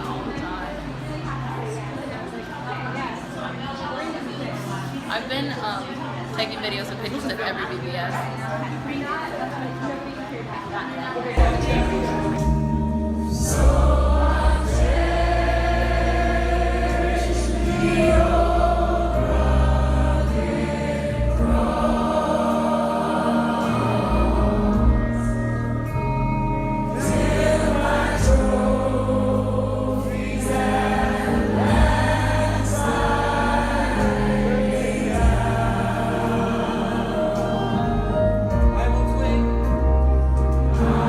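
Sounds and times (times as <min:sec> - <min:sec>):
gospel choir singing: 0:11.3 - 0:41.0
sustained bass notes: 0:11.4 - 0:41.0.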